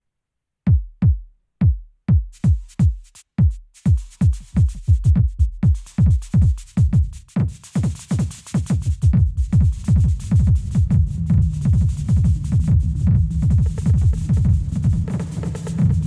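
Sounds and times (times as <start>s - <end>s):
electronic drum machine kicks: 0.7s - 3.6s, 4.5s - 7.1s, 8.7s - 16.0s.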